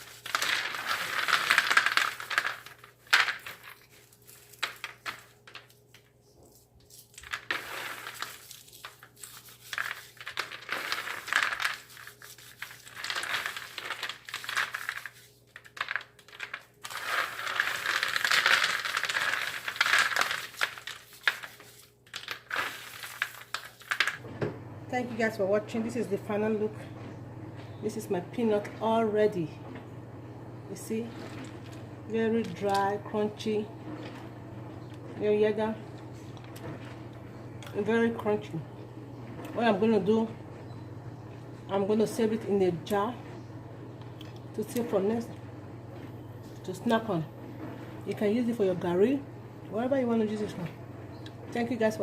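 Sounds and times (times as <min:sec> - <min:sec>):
peanuts rubbed between hands: 0:00.0 - 0:02.8, 0:06.2 - 0:24.2.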